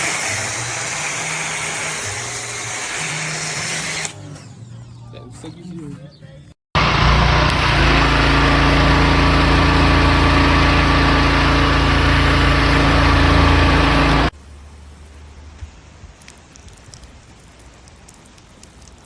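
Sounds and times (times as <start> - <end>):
pressure washer running: 0.0 - 4.1, 6.8 - 14.3.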